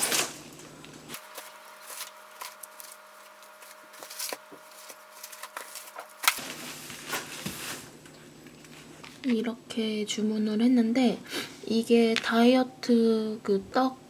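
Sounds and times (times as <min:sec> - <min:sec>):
packages being handled: 0:00.0 - 0:09.3.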